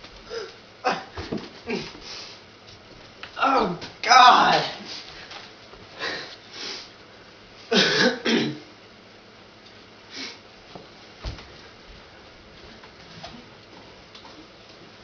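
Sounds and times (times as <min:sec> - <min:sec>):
man's harsh vocal bursts: 0:03.4 - 0:04.9.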